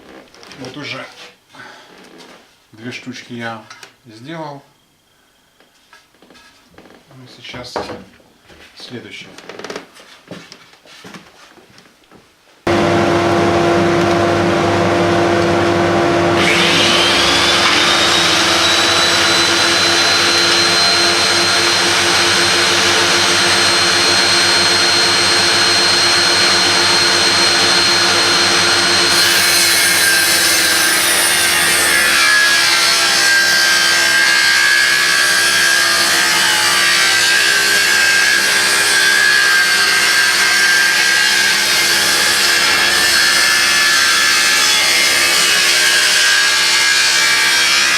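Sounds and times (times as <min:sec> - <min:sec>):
power saw cutting wood: 0:12.7 - 0:47.9.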